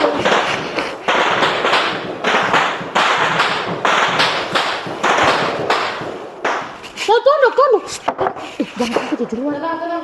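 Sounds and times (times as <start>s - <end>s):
loud banging and slapping: 0.0s - 7.1s.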